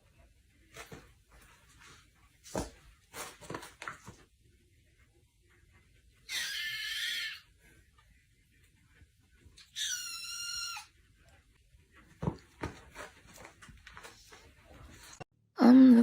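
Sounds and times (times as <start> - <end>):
animal high-pitched cries: 6.2 - 7.5, 9.6 - 10.9.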